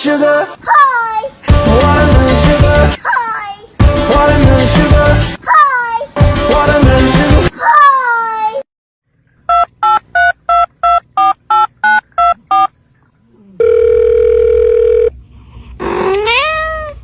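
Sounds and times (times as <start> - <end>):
steady telephone tone: 13.6 - 15.1.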